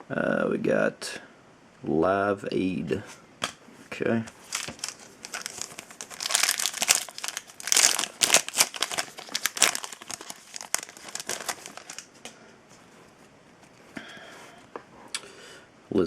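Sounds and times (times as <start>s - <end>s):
foil wrapper crinkling: 4.4s - 12.4s.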